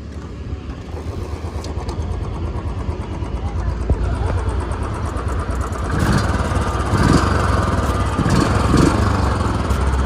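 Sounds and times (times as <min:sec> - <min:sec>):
motorcycle engine idling: 0:00.0 - 0:10.0.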